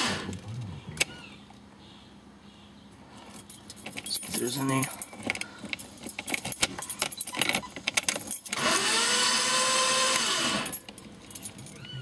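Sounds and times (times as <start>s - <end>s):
keys jingling in ignition: 3.2s - 8.6s, 10.6s - 12.0s
starter motor cranking: 7.2s - 10.8s.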